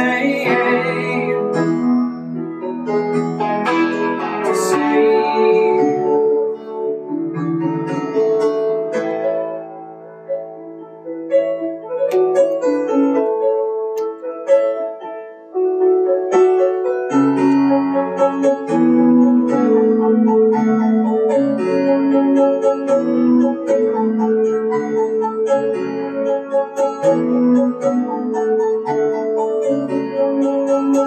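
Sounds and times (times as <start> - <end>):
instrumental song led by piano: 0.0 - 31.0.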